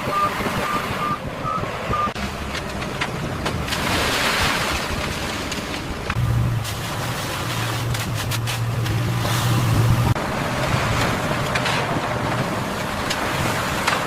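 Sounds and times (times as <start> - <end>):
electronic beeps: 0.0 - 2.2
mechanical rumble: 1.3 - 14.0.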